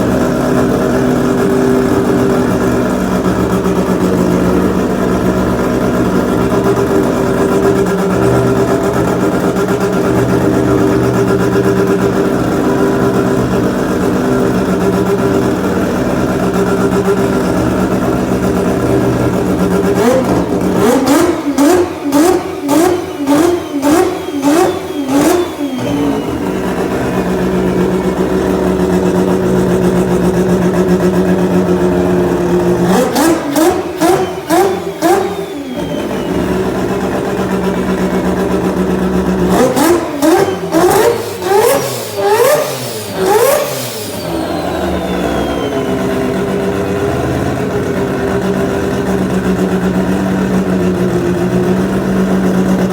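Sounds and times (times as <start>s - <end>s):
rotary engine idling: 0.0s - 52.9s
sharp throttle blips: 14.7s - 48.2s.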